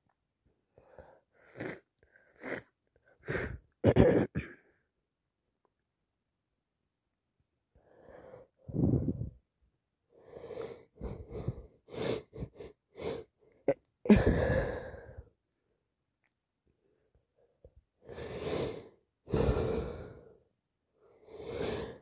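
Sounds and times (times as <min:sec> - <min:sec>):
wheezy catching breaths: 0:10.2 - 0:15.3, 0:18.0 - 0:22.0.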